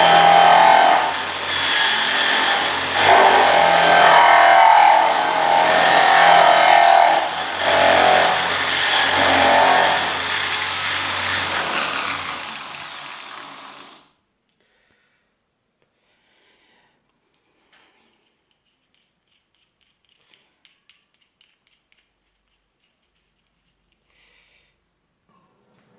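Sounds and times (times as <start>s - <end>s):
bench drill cutting into wood: 0.0s - 14.1s.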